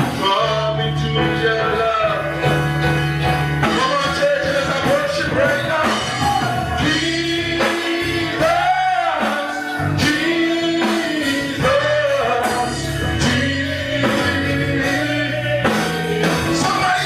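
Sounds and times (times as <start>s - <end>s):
band playing worship music: 0.0s - 17.0s.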